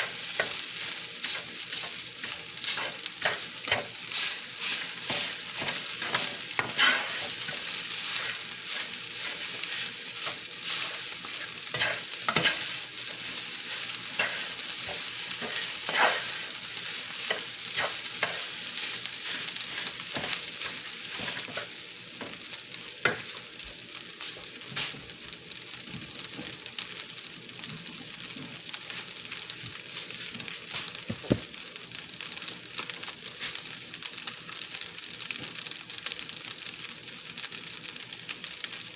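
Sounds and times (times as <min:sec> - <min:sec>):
spatula scraping and knocking pan: 0:00.0 - 0:13.2, 0:14.2 - 0:16.5, 0:17.3 - 0:18.5, 0:19.2 - 0:22.4, 0:23.0 - 0:23.4
rice sizzling in a pan: 0:00.0 - 0:38.9.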